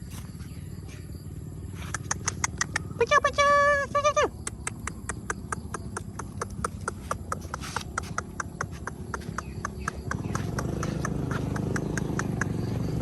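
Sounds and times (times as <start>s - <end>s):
motor engine: 0.0s - 13.0s
rapid tongue clicks: 1.8s - 3.0s, 4.3s - 13.0s.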